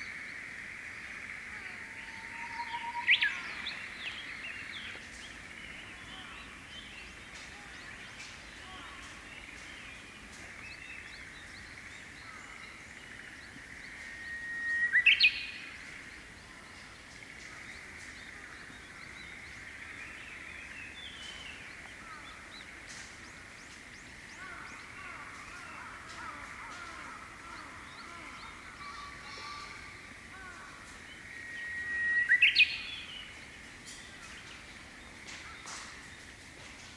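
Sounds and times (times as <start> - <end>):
bush warbler singing: 1.2 - 36.9.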